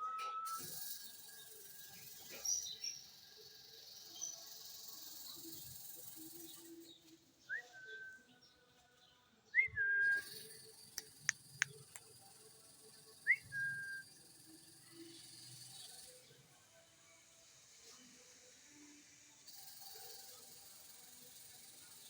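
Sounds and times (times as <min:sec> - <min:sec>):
sharp clicks: 0:10.9 - 0:12.2.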